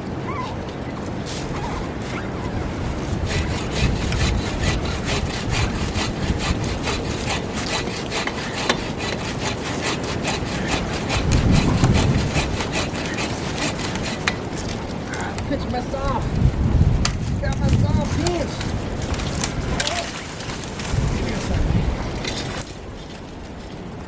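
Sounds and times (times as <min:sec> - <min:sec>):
low wind rumble: 0:00.0 - 0:24.0
hand saw cutting branch: 0:02.8 - 0:15.8, 0:17.0 - 0:22.8.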